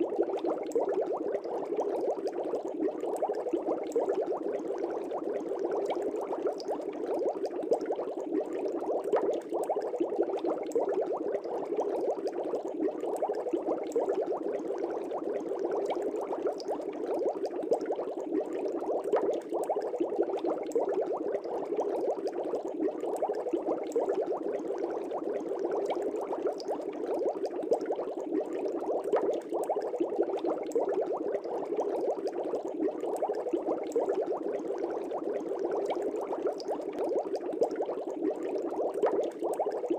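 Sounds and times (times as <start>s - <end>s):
aquarium air bubbling: 0.0s - 39.9s.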